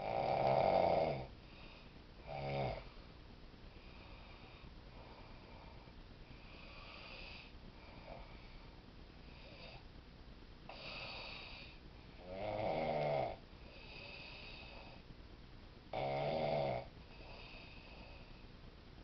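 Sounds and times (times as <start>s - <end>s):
man snoring: 0.0s - 1.3s, 2.2s - 2.9s, 10.7s - 15.0s, 15.9s - 18.2s
quiet breaths: 0.0s - 19.0s.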